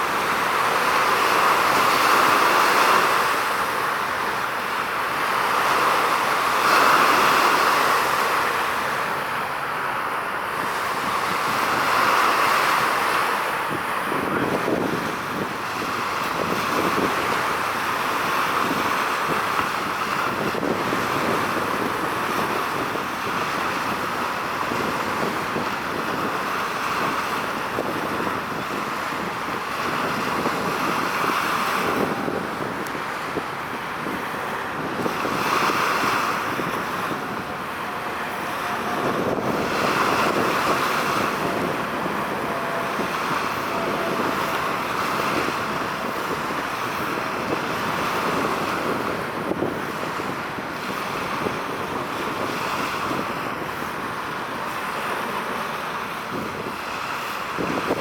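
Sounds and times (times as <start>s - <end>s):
sea waves: 0.0s - 58.0s
wind on microphone: 10.4s - 58.0s.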